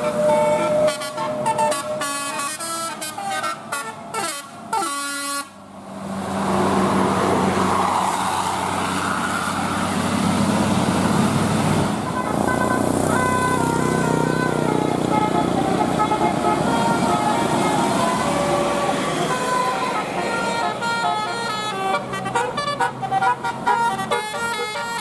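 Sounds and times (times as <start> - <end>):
bus horn playing a tune: 0.0 - 5.7, 11.6 - 25.0
engine and road noise: 0.0 - 25.0.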